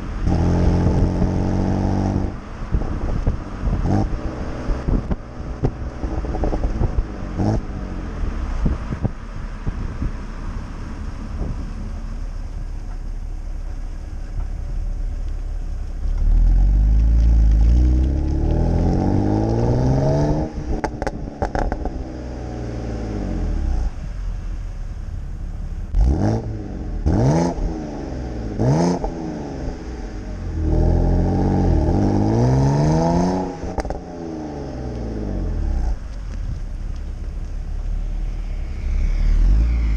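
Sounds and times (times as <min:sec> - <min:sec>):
exhaust crackles and pops: 0:00.0 - 0:22.3, 0:30.5 - 0:39.9
car engine revving: 0:00.0 - 0:39.9.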